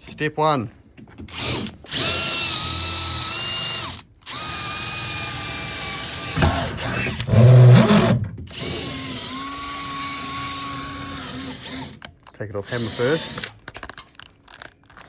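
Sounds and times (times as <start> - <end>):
power drill drilling metal: 1.3 - 12.1, 12.7 - 13.6.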